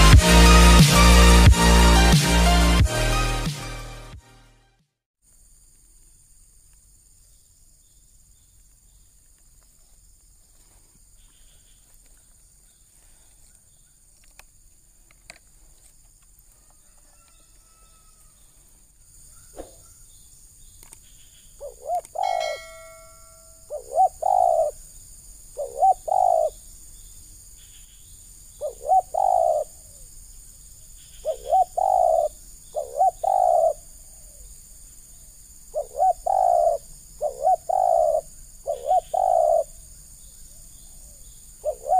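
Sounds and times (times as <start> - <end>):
dove cooing: 21.6 - 24.8, 25.6 - 26.6, 28.6 - 30.0, 31.2 - 34.5, 35.7 - 39.8, 40.9 - 41.9.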